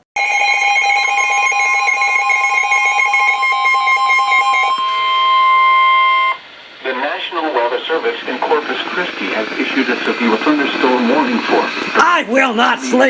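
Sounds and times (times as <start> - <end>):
steady alarm tone: 0.0 - 9.9
pulsing weather alert alarm: 0.0 - 13.0.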